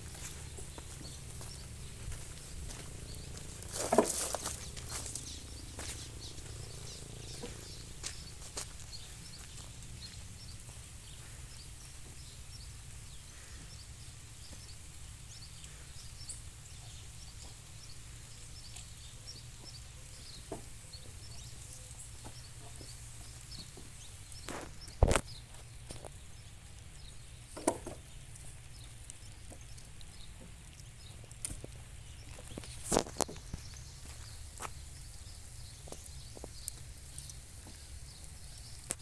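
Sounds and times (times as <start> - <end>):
steady low rumble: 0.0 - 13.2
birds chirping: 0.0 - 39.0.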